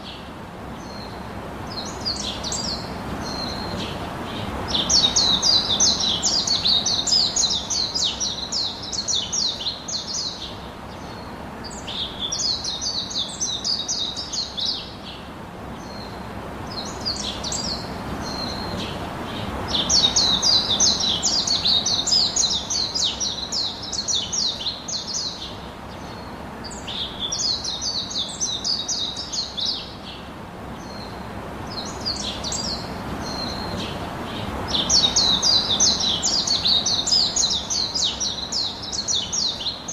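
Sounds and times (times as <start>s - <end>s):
bird chattering song: 34.7s - 39.9s.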